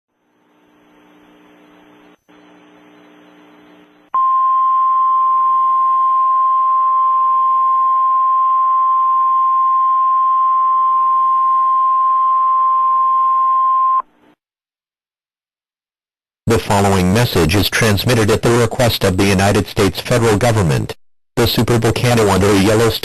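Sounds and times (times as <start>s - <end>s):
faint low hum: 0.1s - 6.4s.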